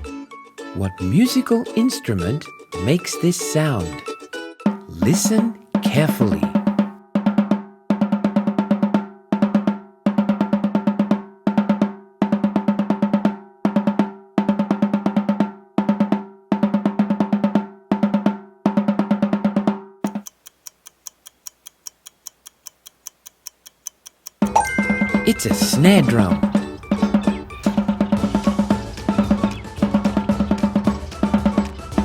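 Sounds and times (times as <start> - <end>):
snare drum rolls: 4.7 - 7.0, 24.9 - 32.0
faint steady ticking: 20.0 - 32.0.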